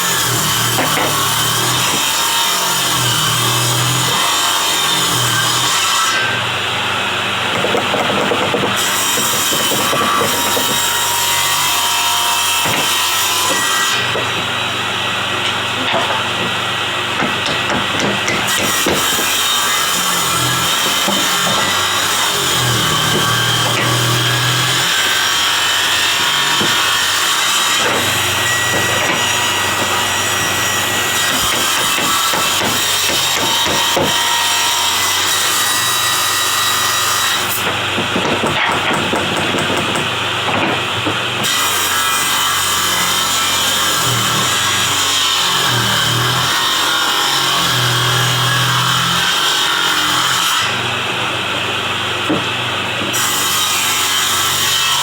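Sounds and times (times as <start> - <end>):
wood being sawn: 0.0 - 6.4, 7.6 - 14.6, 15.7 - 50.8.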